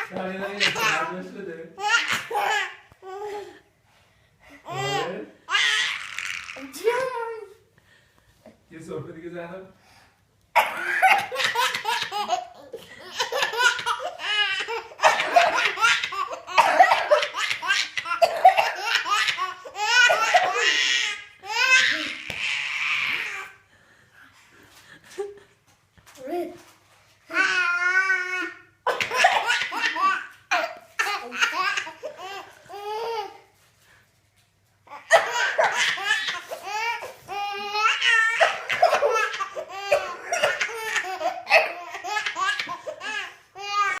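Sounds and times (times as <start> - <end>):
baby laughing: 0.0 - 1.2, 1.8 - 3.4, 4.6 - 6.7, 10.6 - 23.5, 27.3 - 33.4, 34.9 - 44.0.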